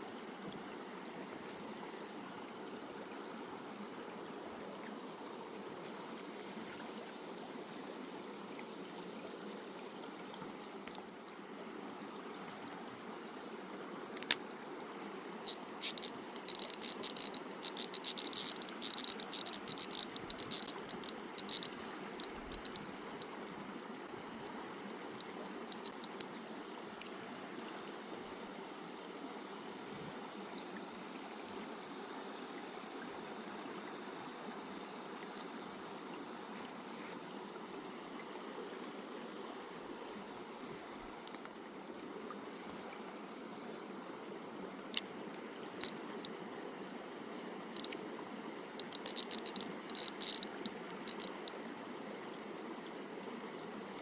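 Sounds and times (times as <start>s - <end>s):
mountain stream running: 0.0s - 54.0s
sharp clicking: 15.5s - 23.3s, 25.2s - 26.3s, 47.8s - 48.0s, 48.8s - 51.6s.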